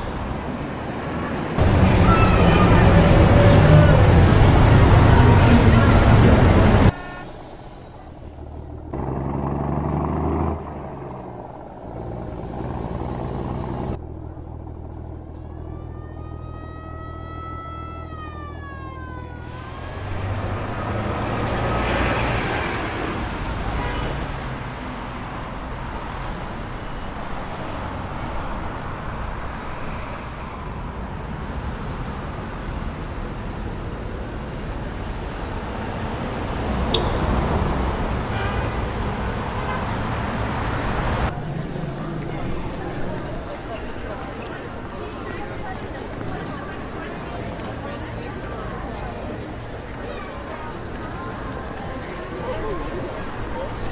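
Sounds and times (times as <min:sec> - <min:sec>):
vehicles passing: 0:00.0 - 0:53.9
siren wailing: 0:15.3 - 0:22.1.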